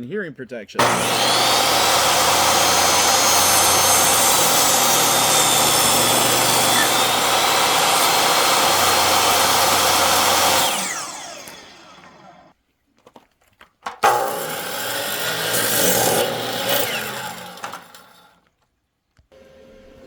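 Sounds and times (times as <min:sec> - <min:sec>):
electric power tool running: 0:00.8 - 0:12.5, 0:14.0 - 0:18.4
power tool spinning down: 0:00.8 - 0:12.5, 0:14.0 - 0:18.4.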